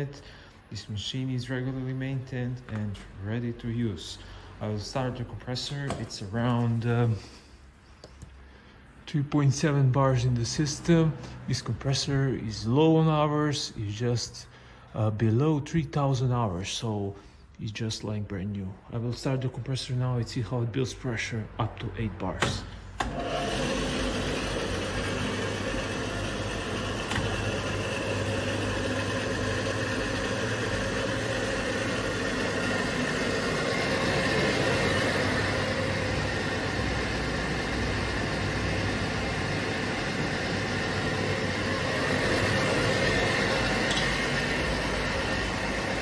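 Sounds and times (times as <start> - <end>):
air compressor running: 22.6 - 46.0.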